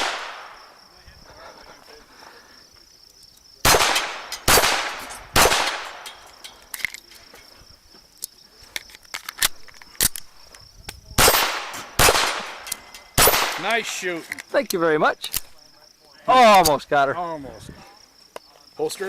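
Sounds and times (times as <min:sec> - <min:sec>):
pistol shots: 0:00.0 - 0:00.6, 0:03.6 - 0:06.3, 0:11.2 - 0:13.7.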